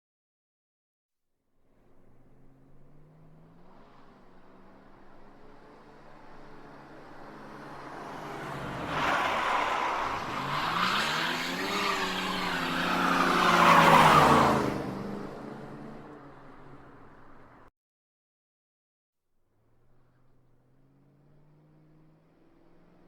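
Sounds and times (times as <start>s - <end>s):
car engine running: 1.7s - 17.7s
car tyres skidding and squealing: 1.8s - 17.7s.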